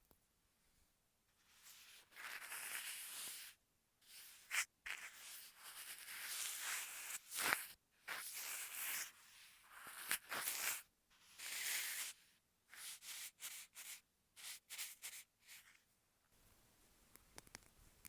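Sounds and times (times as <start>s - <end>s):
scratchy rubbing strokes: 1.5s - 15.8s.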